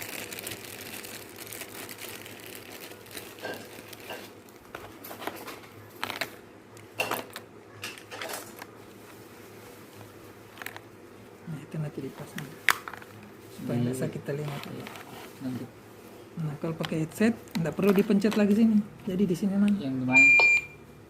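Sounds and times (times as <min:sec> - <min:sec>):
plastic packaging rustling: 0:00.0 - 0:06.4, 0:07.0 - 0:11.4, 0:12.0 - 0:13.6, 0:14.2 - 0:16.1.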